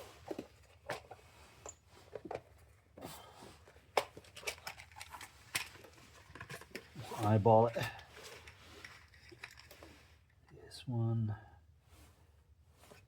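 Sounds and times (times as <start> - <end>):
clicks and rattles of small parts: 0.1 - 2.7, 3.6 - 10.5.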